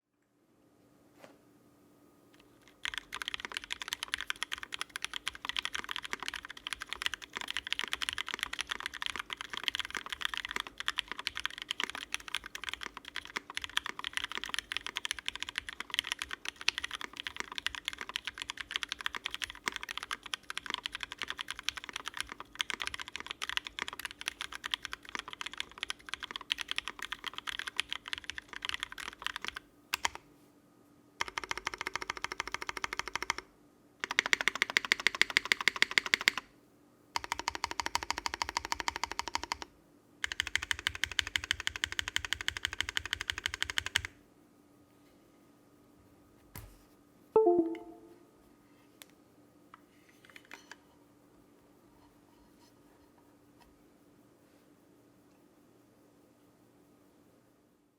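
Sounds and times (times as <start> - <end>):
mechanical keyboard typing: 2.6 - 30.2, 31.2 - 36.5, 37.2 - 44.2.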